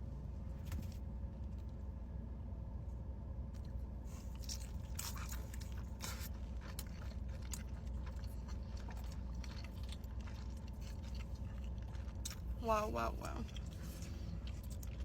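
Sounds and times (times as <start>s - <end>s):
crunchy chewing of chicken wings: 3.6s - 15.0s.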